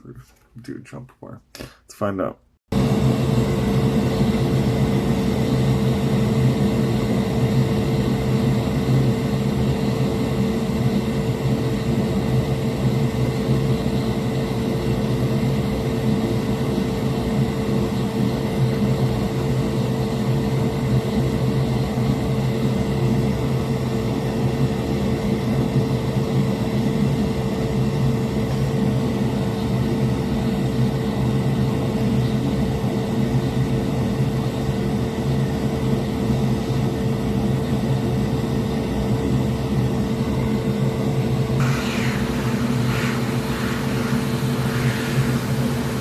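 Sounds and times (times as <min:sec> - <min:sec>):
electric motor hum: 0:41.6 - 0:46.0.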